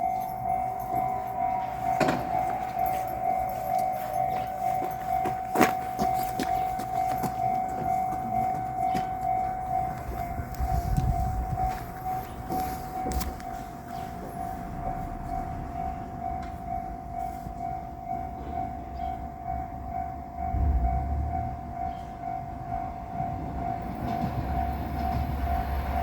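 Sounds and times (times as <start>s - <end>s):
level crossing warning bell: 0.0s - 26.0s
low rumble: 20.4s - 21.8s.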